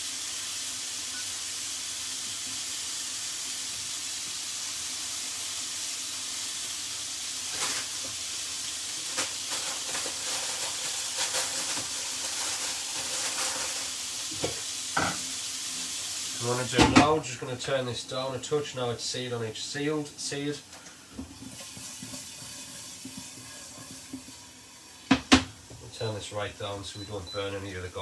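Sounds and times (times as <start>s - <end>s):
chicken sizzling in a frying pan: 0.0s - 28.0s.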